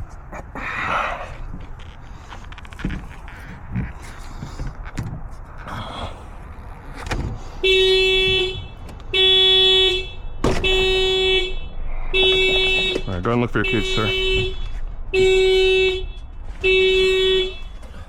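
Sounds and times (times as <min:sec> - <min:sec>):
car horn blasts: 0:07.6 - 0:17.8.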